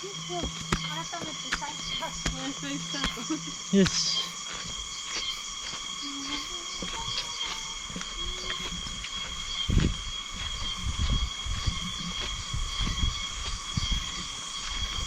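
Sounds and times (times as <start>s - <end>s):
insect chorus drone: 0.0s - 15.0s.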